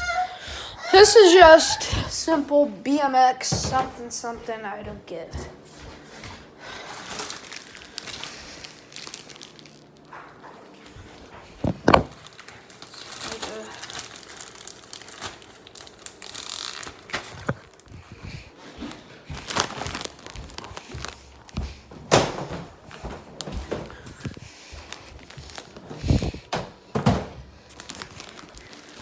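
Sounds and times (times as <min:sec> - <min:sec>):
objects thumping and knocking: 0:11.5 - 0:12.2, 0:25.2 - 0:27.5.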